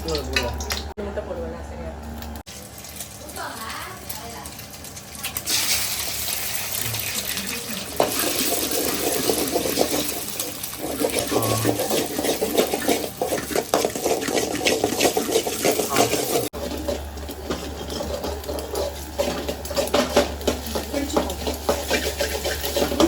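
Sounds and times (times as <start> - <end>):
metal utensil stirring in pot: 7.0 - 23.0.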